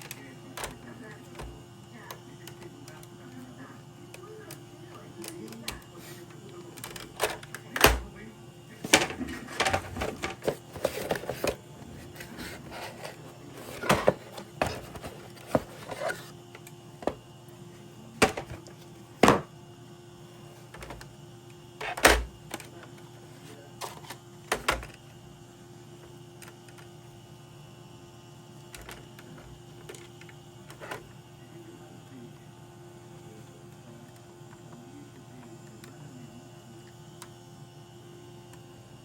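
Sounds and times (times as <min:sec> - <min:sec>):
hard parts clicking and knocking: 0:08.8 - 0:16.3, 0:18.2 - 0:19.5.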